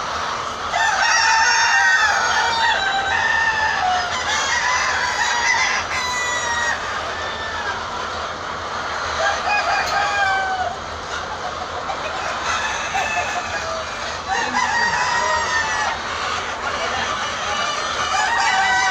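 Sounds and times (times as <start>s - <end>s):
hens clucking and calling: 0.0s - 18.9s.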